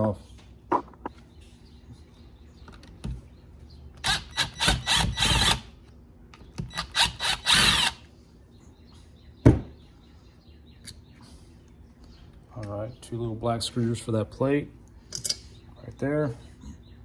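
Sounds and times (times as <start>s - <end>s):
power screwdriver stuttering: 4.0s - 5.7s, 6.7s - 8.0s.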